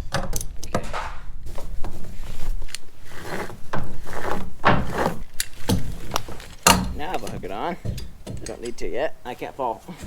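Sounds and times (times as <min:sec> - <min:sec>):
metal buckles clinking: 0:02.6 - 0:09.0.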